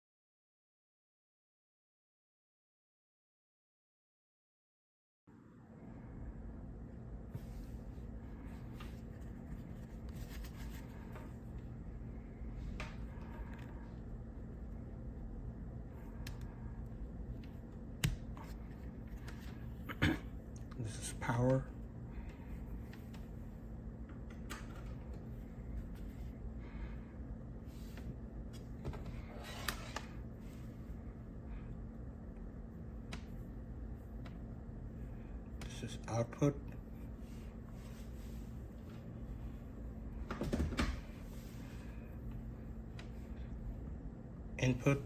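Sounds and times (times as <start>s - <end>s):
steady low hum: 5.3s - 45.0s
faint handling noises: 7.3s - 11.8s.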